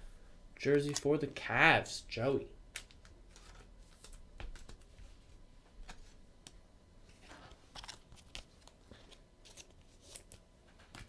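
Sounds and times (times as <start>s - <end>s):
trading cards clicking: 0.6s - 1.2s.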